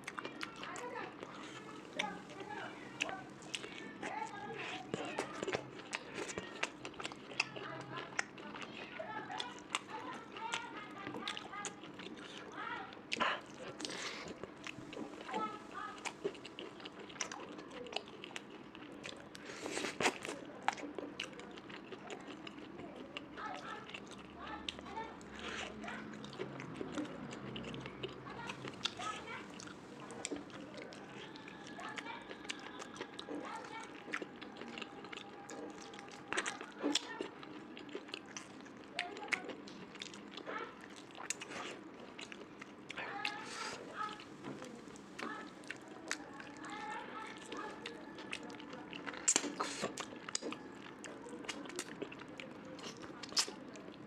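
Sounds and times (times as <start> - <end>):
person chewing food: 0.0 - 54.0
wet mouth clicks and smacks: 49.2 - 50.5, 52.8 - 53.6.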